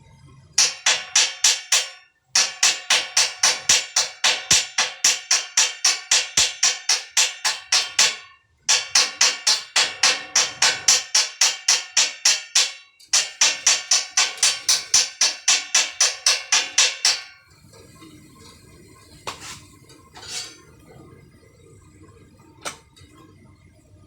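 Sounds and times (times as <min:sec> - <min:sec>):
hammer striking steel: 0:00.6 - 0:18.2, 0:19.3 - 0:20.6.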